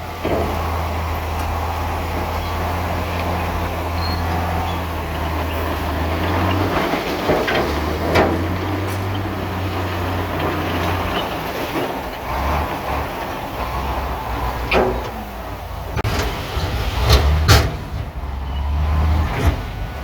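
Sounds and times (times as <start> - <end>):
diesel engine of heavy machinery: 0.0 - 20.0.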